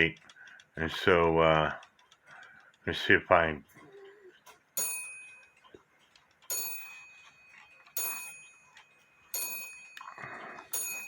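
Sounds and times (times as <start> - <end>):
clock ticking: 0.0 - 11.0.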